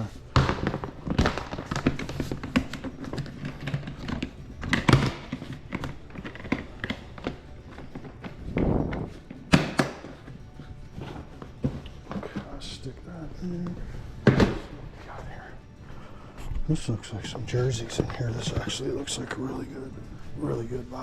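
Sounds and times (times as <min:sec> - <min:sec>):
boxes thunking and knocking: 0:00.0 - 0:12.9, 0:13.8 - 0:15.0.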